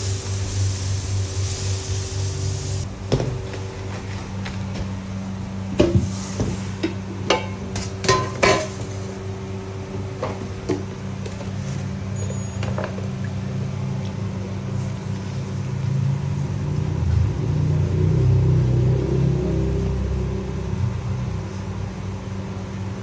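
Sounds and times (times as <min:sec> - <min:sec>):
low machine hum: 0:00.0 - 0:23.0
utensils and dishes clinking: 0:05.8 - 0:09.1.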